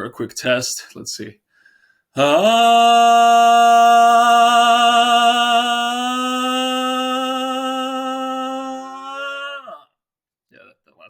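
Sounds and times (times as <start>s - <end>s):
man singing a long held note: 2.2s - 9.8s.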